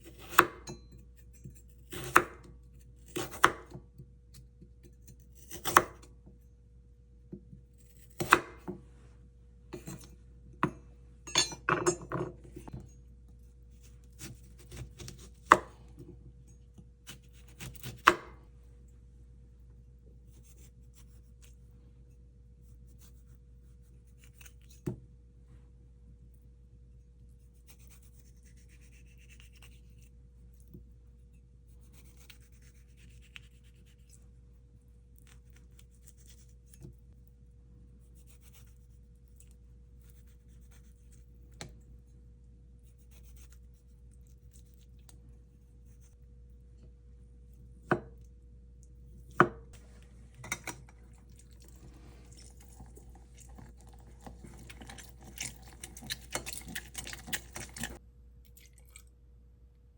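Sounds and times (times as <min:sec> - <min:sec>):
utensils clattering: 0:11.3 - 0:12.4
steady low hum: 0:36.2 - 0:59.9.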